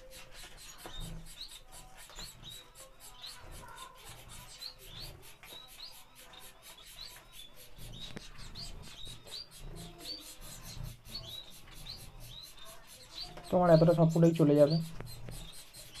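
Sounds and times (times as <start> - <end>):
finches chirping: 0.0 - 16.0.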